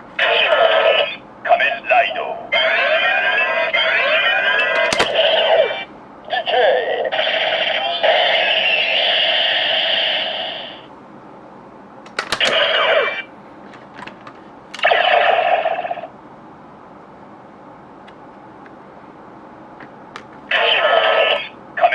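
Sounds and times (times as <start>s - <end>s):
plastic clicks of toy mechanism: 4.8s - 5.2s, 12.1s - 12.7s.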